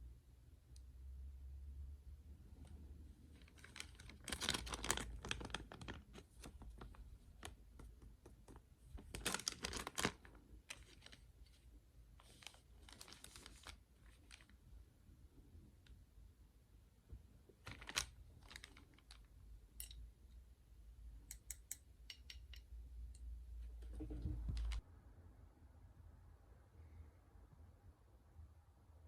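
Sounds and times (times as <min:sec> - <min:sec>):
plastic packaging crinkling: 0:03.3 - 0:07.6, 0:08.5 - 0:11.6, 0:12.2 - 0:14.6, 0:17.6 - 0:19.3.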